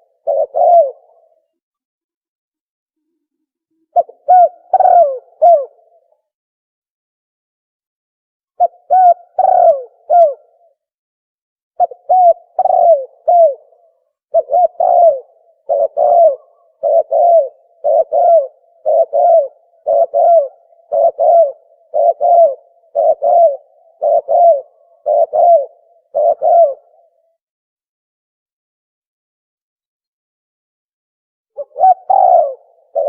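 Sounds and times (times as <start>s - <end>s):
dove cooing: 0.0s - 1.6s, 3.8s - 6.1s, 8.6s - 10.8s, 11.8s - 27.4s, 31.6s - 33.0s.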